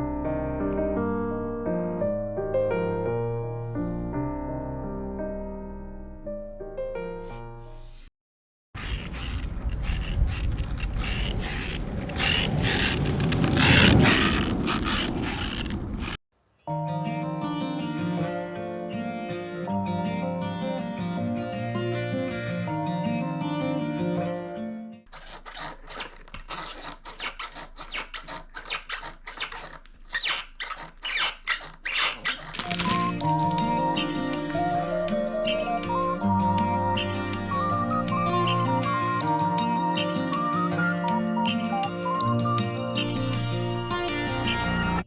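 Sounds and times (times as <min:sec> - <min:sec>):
skateboard truck squeaking: 0:08.8 - 0:16.2, 0:25.1 - 0:45.0
skateboard wheels rolling on pavement: 0:08.8 - 0:16.2.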